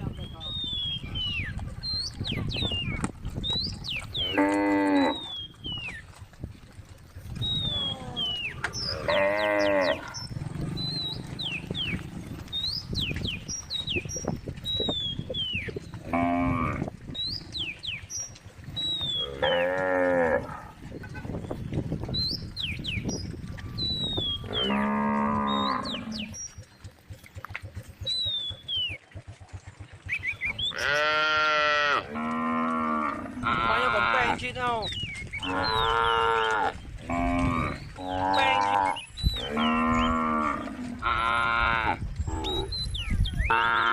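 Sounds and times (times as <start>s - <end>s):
small birds chirping: 0.0s - 6.2s, 7.4s - 16.2s, 17.1s - 19.8s, 20.9s - 29.3s, 30.0s - 31.2s, 33.4s - 40.8s, 42.0s - 43.6s
cows mooing: 4.1s - 5.5s, 7.6s - 12.5s, 15.8s - 17.0s, 19.0s - 20.8s, 24.2s - 26.4s, 30.6s - 34.6s, 35.4s - 43.9s.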